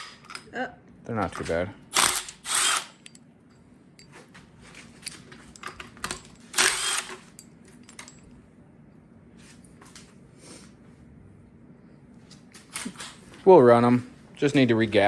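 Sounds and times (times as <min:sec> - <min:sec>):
metal tools clinking: 0:01.2 - 0:08.4.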